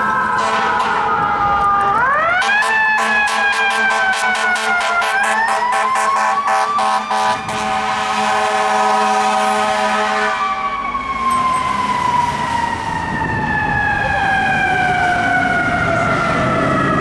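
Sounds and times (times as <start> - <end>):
wailing siren: 0.0 - 17.0
fire engine air horn blasts: 0.2 - 10.6.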